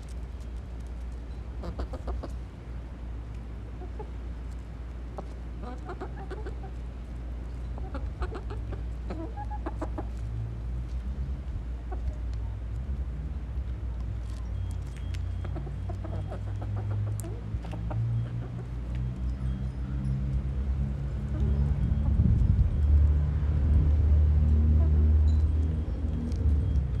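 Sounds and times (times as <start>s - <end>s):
chickens clucking: 1.6s - 2.4s, 3.6s - 6.9s, 7.6s - 10.3s, 11.9s - 12.3s, 14.8s - 19.1s
steady low rumble: 20.3s - 24.6s.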